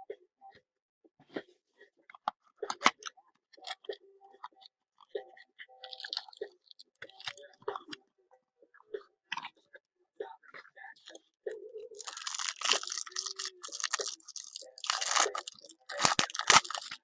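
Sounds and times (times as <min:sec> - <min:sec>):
packaging clicks: 0:12.0 - 0:17.0
plastic wrap crinkling: 0:12.0 - 0:17.0.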